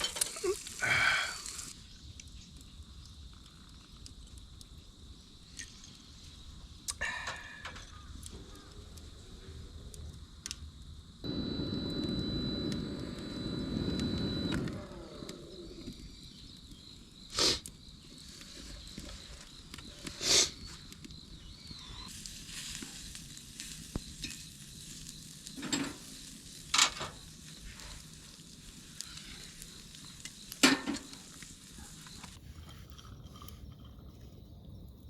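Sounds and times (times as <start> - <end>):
offal sizzling on a griddle: 0.0 - 4.1, 15.6 - 33.0.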